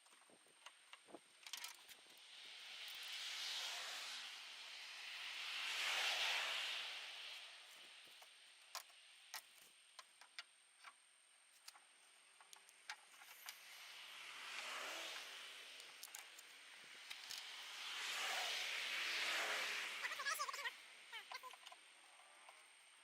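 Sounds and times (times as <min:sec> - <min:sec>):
vehicle passing: 0:02.2 - 0:08.0, 0:13.2 - 0:22.6.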